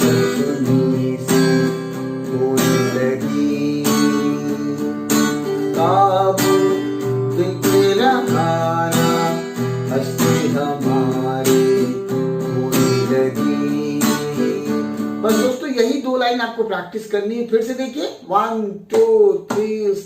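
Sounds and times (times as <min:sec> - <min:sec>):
person singing: 0:00.0 - 0:15.6
acoustic guitar strumming: 0:00.0 - 0:16.3.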